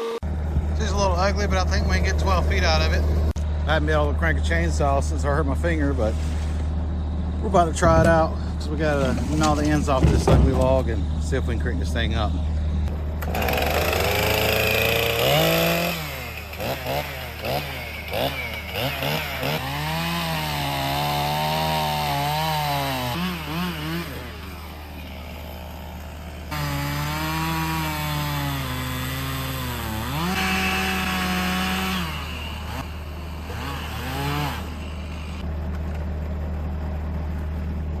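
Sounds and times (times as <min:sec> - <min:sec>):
chainsaw revving: 0:13.2 - 0:35.5.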